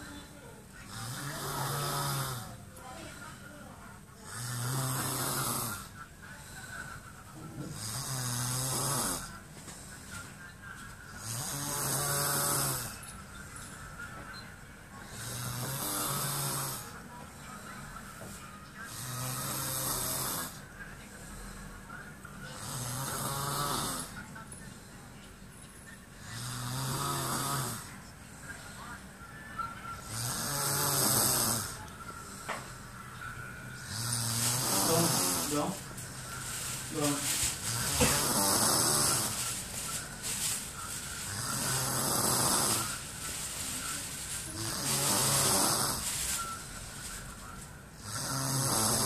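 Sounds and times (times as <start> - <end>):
quiet breathing: 0.0 - 49.0
person snoring: 4.3 - 5.9, 7.7 - 9.3, 11.2 - 13.0, 15.2 - 16.9, 22.6 - 24.1, 26.3 - 27.9, 30.0 - 31.8, 33.8 - 35.7, 36.9 - 39.4, 41.3 - 43.0, 44.5 - 46.0, 48.0 - 49.0.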